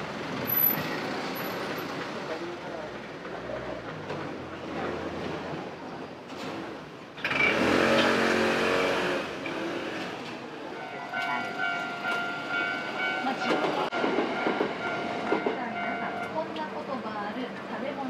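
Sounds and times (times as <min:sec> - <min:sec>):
level crossing warning bell: 0:10.7 - 0:16.8.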